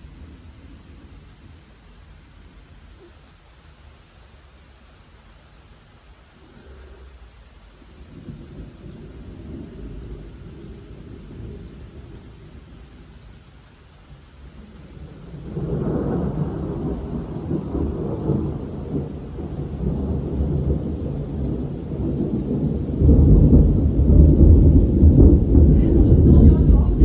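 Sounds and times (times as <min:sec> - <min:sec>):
rain shower: 0:00.0 - 0:27.0
rolling thunder: 0:07.7 - 0:27.0.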